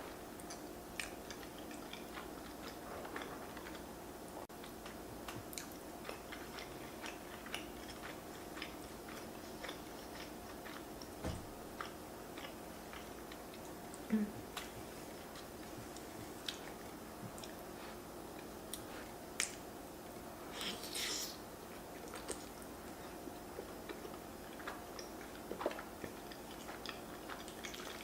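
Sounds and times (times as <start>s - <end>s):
faint steady hum: 0.0s - 28.0s
person chewing food: 0.2s - 19.6s, 20.6s - 28.0s
soft low thump: 11.2s - 11.6s.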